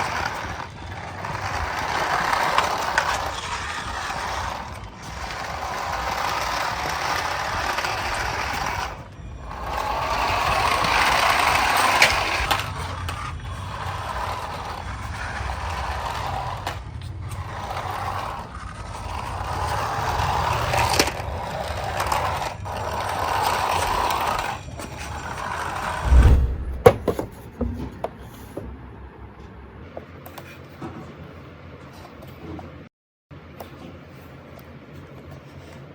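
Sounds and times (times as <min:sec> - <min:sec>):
toy car electric motor running: 0:00.0 - 0:26.0
knocks and thumps: 0:26.0 - 0:28.7.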